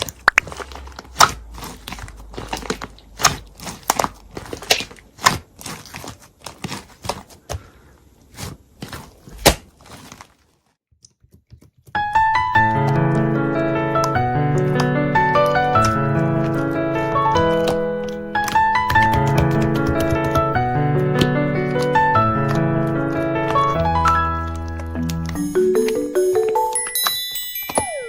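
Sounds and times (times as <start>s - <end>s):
slime clicking and popping: 0.0s - 5.4s, 17.5s - 20.5s
light piano music: 11.9s - 28.0s.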